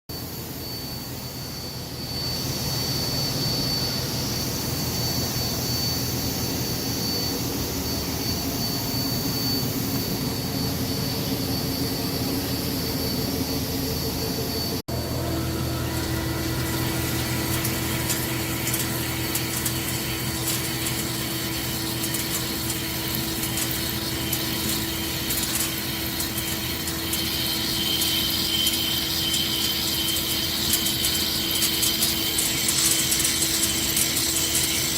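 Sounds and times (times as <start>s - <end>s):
thin machine whine: 0.1s - 34.9s
lathe mechanical hum: 0.4s - 34.9s
crackle of metal cutting: 14.9s - 34.9s.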